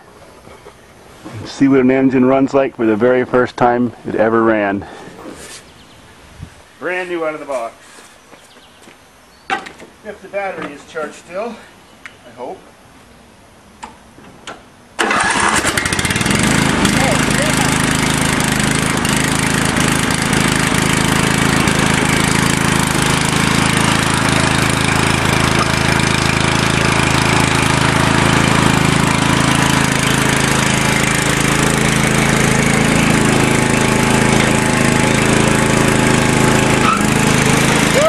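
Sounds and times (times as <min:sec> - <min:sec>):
lawn tractor engine fast idle: 0:15.0 - 0:38.0.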